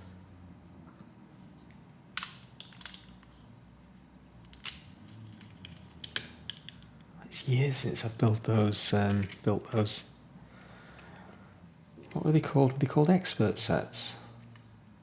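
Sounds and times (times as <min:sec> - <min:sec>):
plastic pieces clicking: 0:02.2 - 0:03.3, 0:04.5 - 0:06.9.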